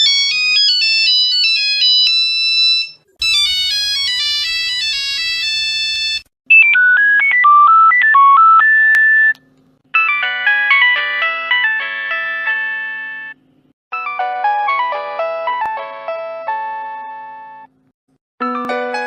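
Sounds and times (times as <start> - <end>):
mobile phone ringtones: 0.0 - 9.4, 10.0 - 13.4
beeping ringtone tune: 1.8 - 9.3, 10.0 - 13.4.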